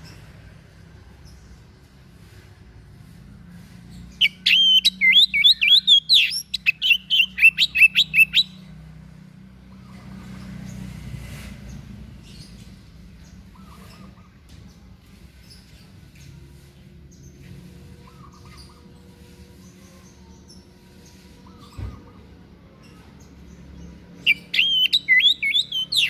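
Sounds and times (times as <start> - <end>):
songbird whistling song: 4.1 - 8.6, 24.2 - 26.0.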